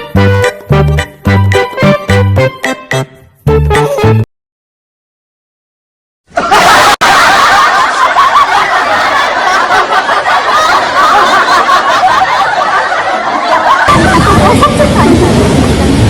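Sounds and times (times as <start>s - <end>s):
continuous laughter: 6.4s - 15.9s.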